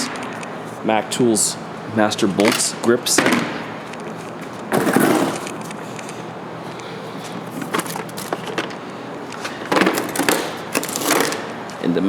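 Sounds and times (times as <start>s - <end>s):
tool cases clattering: 2.4s - 6.2s, 6.8s - 11.9s
tool cases scraping and rustling: 3.9s - 11.9s.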